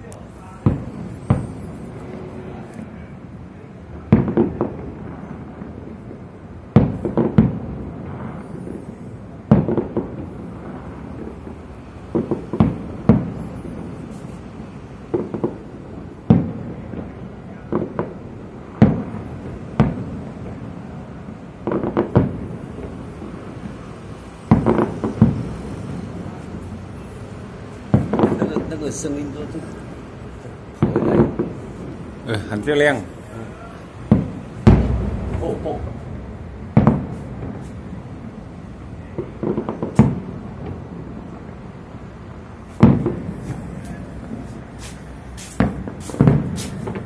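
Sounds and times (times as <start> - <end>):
fireworks booming bangs: 0.0 - 47.0.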